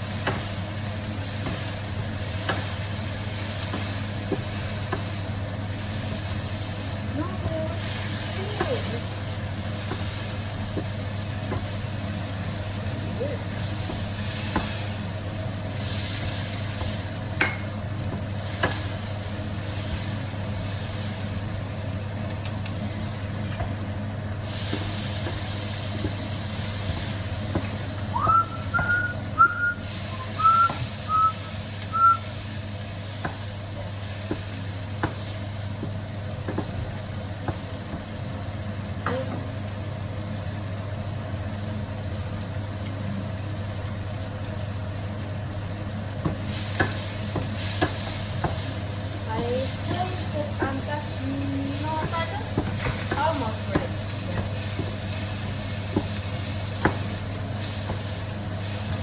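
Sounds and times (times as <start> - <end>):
steady low hum: 0.0 - 59.0
high whistle-like chirps: 28.1 - 32.3.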